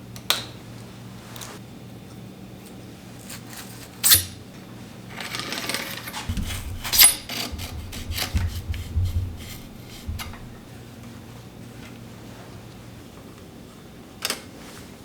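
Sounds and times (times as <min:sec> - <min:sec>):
rustling and light knocks: 0:05.4 - 0:10.8
metallic clinks: 0:06.2 - 0:10.6.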